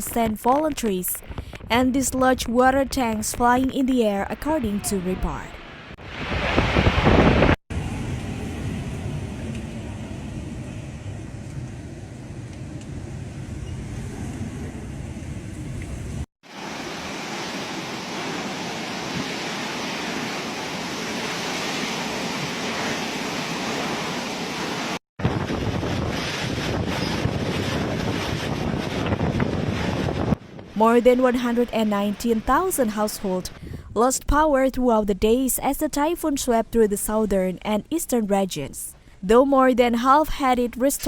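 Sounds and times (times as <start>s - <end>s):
wind buffeting microphone: 6.0s - 16.3s, 25.2s - 31.8s.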